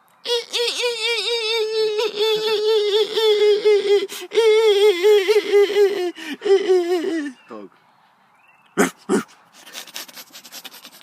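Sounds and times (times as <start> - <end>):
child squeaking like a bat: 0.3 - 7.3.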